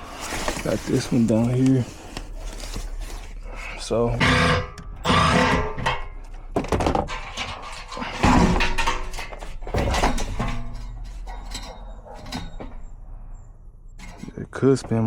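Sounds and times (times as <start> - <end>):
heavy equipment knocking and clattering: 4.9 - 12.9.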